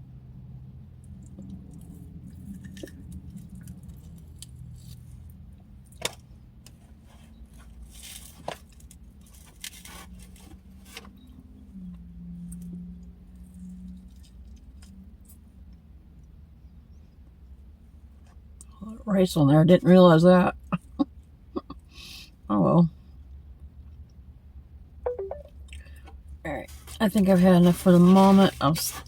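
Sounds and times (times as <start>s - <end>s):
utensil scraping a dish: 26.6s - 29.0s.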